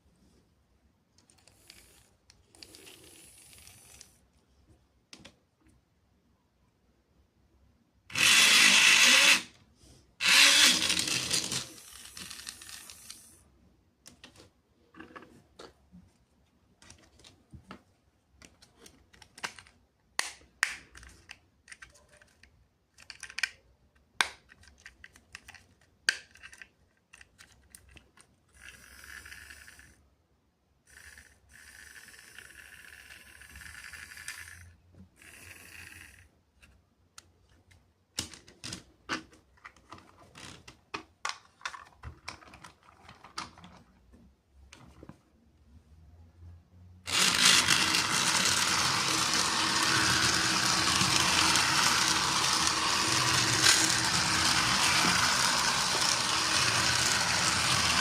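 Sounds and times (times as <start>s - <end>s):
plastic toy parts clicking: 10.2s - 13.4s, 18.4s - 30.0s, 30.9s - 43.9s, 47.1s - 58.0s.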